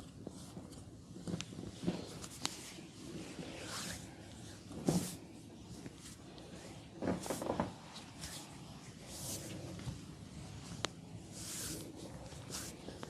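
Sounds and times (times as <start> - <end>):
hands rubbing on skin: 10.7 - 13.0.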